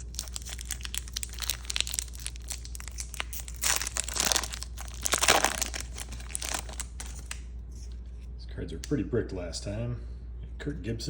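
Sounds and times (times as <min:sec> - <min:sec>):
wrapper crinkling and tearing: 0:00.0 - 0:07.5.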